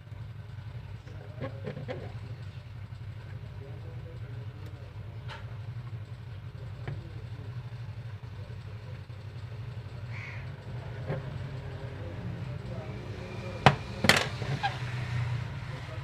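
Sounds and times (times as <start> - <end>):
low mechanical hum: 0.0 - 16.0.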